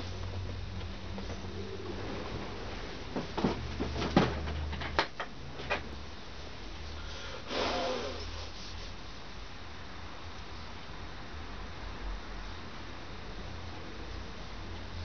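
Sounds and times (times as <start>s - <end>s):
knocks and clicks of handling: 3.2s - 5.9s.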